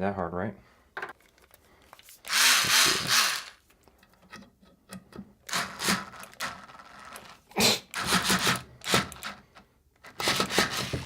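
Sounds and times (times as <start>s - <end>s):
cordless screwdriver whirring: 2.0s - 3.6s, 5.5s - 7.3s, 7.9s - 9.4s, 10.1s - 11.0s
screwdriver bit rattling in screw: 2.0s - 3.6s, 5.5s - 9.4s, 10.0s - 11.0s.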